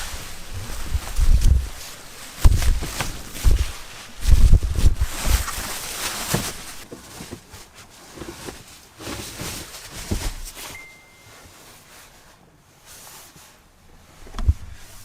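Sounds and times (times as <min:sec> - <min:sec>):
tire thumping and scraping: 0:00.0 - 0:07.5
short steady beep: 0:10.7 - 0:11.5.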